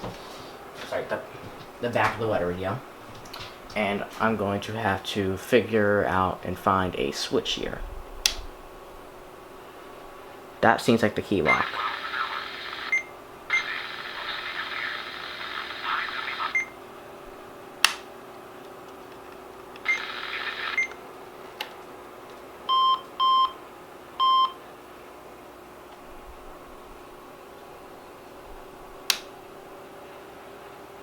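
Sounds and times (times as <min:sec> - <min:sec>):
sharp click: 0:08.2 - 0:08.5, 0:17.8 - 0:18.1, 0:29.1 - 0:29.3
radio static hiss: 0:10.7 - 0:16.8, 0:19.8 - 0:20.9.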